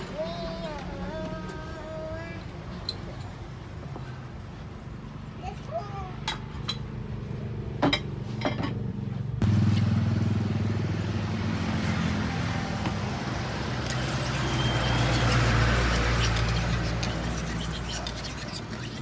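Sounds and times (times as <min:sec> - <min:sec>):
car engine running: 0:09.4 - 0:13.4.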